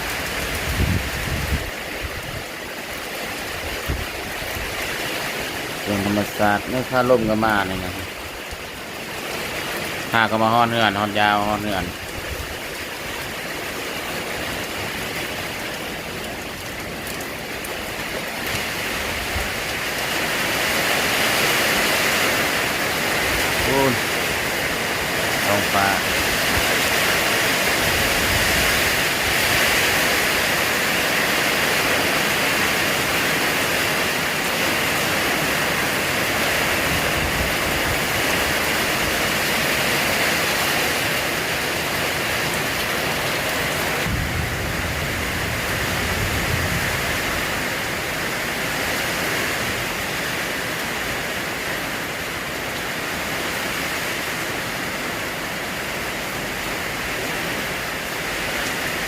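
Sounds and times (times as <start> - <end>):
gusts of wind: 0.0 - 5.9, 11.9 - 51.3
steady rain falling: 0.0 - 59.0.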